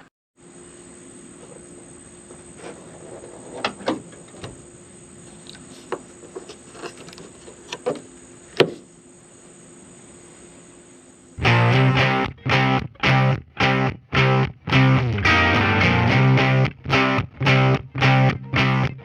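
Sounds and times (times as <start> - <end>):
faint steady hiss: 0.4 - 13.3.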